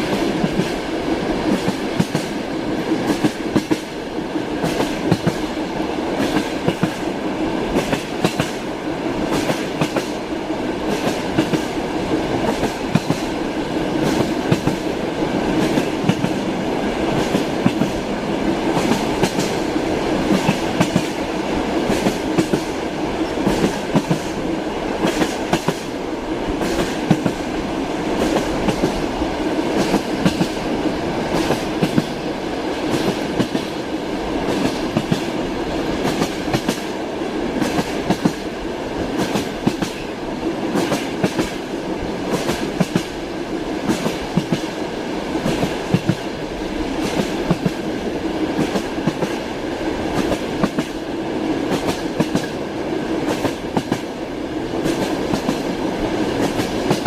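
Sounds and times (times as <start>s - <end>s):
train wheels clacking on rails: 0.0s - 57.0s.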